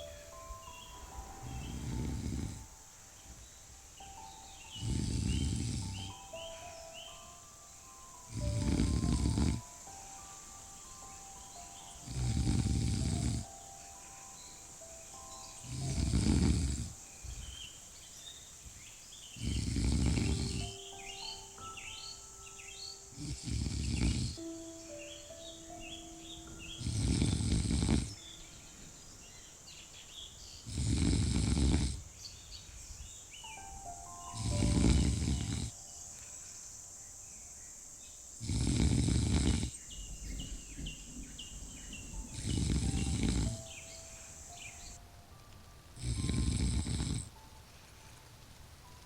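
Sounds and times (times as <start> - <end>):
person snoring: 1.2 - 2.7, 4.7 - 6.8, 8.3 - 9.8, 12.0 - 13.5, 15.6 - 17.4, 19.4 - 20.8, 23.2 - 24.5, 26.8 - 28.2, 30.6 - 32.1, 34.3 - 35.8, 38.4 - 39.8, 42.3 - 43.7, 46.0 - 47.3.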